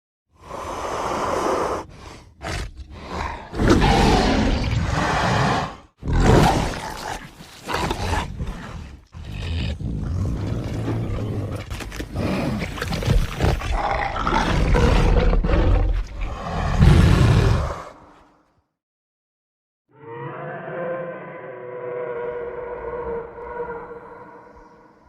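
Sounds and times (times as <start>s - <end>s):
dinosaur roar: 0.5s - 18.1s, 19.9s - 25.0s.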